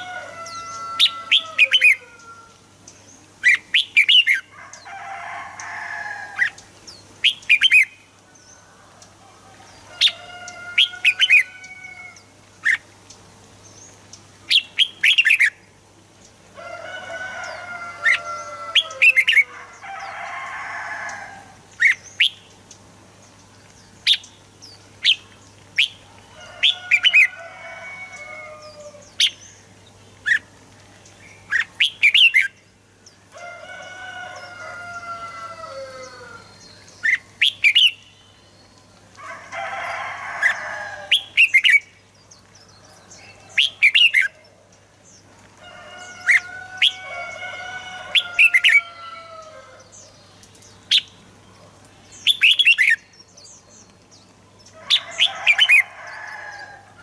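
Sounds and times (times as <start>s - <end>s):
birds whistling song: 2.9s - 4.5s, 6.4s - 8.6s, 13.6s - 15.6s, 21.8s - 22.8s, 23.6s - 27.3s, 28.1s - 33.2s, 36.0s - 39.0s, 40.4s - 44.4s, 52.0s - 56.8s.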